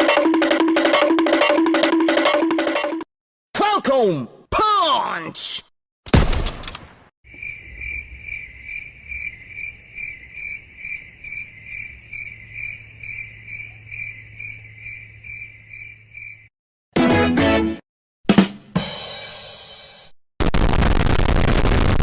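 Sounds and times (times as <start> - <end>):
crickets chirping: 7.3 - 16.5.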